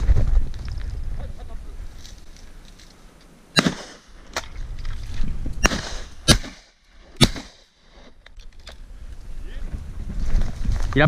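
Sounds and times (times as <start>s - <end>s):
shotgun shots with echo: 3.6s - 4.1s, 5.6s - 7.6s.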